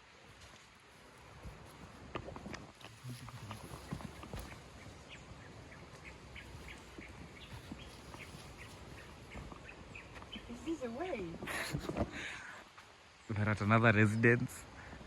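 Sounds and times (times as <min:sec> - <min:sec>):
footsteps scuffing on trail: 0:00.2 - 0:10.5.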